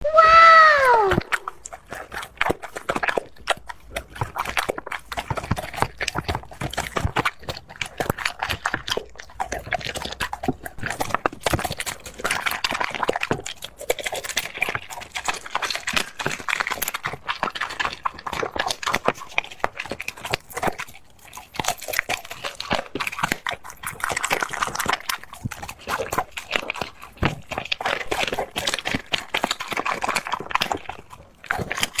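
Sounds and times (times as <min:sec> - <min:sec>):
pet chewing and crunching: 0:00.8 - 0:32.0.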